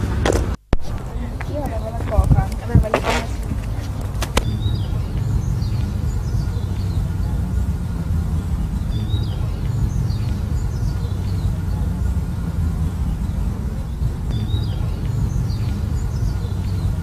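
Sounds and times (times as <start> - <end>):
steady low rumble: 0.0 - 17.0
small birds chirping: 0.8 - 17.0
sharp clicks: 3.4 - 4.6.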